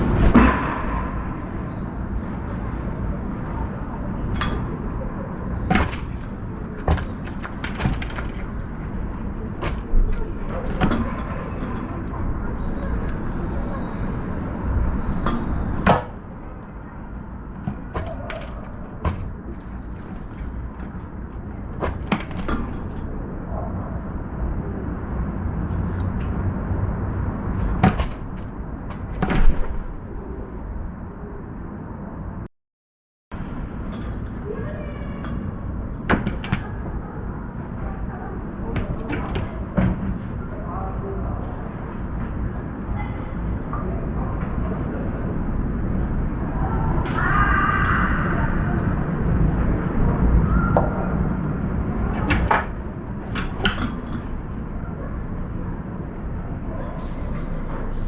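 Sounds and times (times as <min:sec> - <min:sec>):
steady low rumble: 0:00.0 - 0:32.5.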